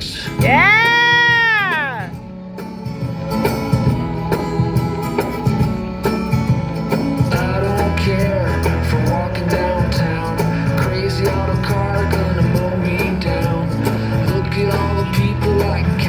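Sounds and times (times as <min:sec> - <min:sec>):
rock song with guitar: 0:00.0 - 0:16.0.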